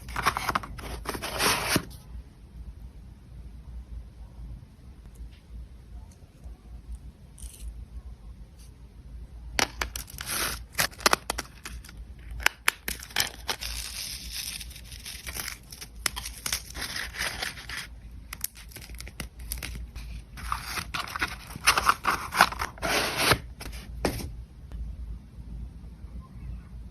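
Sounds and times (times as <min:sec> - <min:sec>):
packaging crinkling and rustling: 0:00.0 - 0:01.9, 0:09.6 - 0:24.3
packaging tearing: 0:00.0 - 0:01.9, 0:09.8 - 0:24.2.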